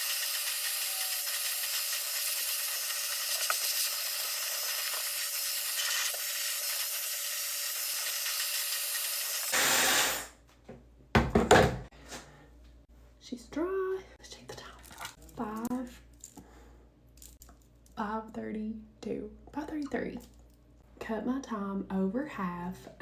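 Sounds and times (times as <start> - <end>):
hair dryer running: 0.0 - 3.6, 8.0 - 10.3.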